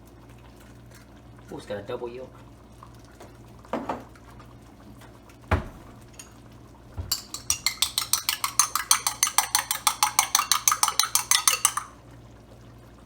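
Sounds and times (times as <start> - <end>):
utensil clinking against bowl: 6.1 - 6.4, 7.0 - 12.0.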